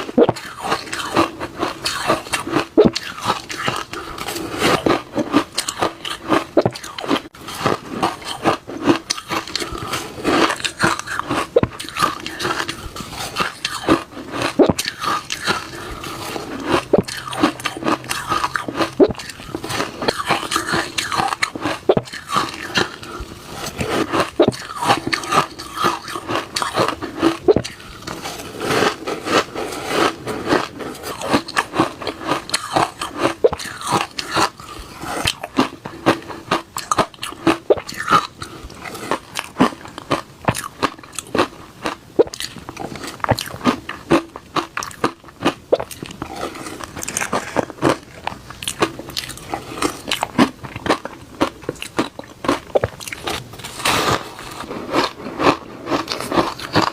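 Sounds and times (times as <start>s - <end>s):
person crunching ice: 0.0s - 56.9s.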